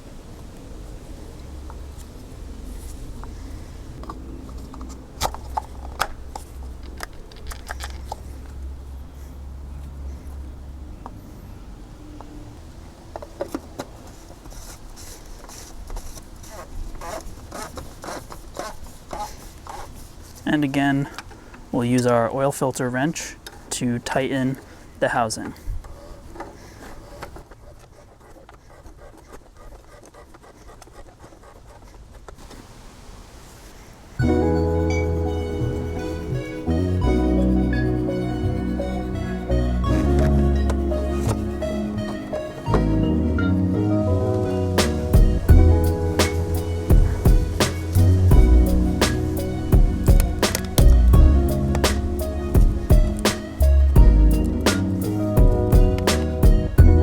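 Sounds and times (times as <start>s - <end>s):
low steady hum: 34.2s - 57.0s.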